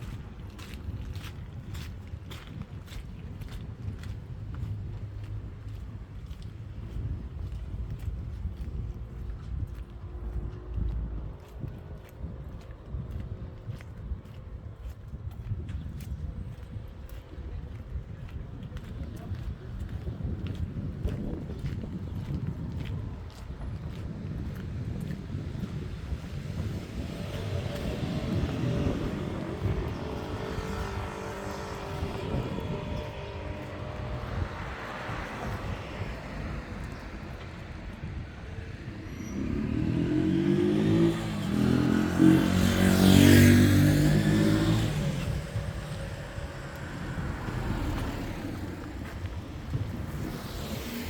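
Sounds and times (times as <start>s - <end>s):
faint traffic: 0.0s - 51.0s
vehicle engine passing by: 22.2s - 51.0s.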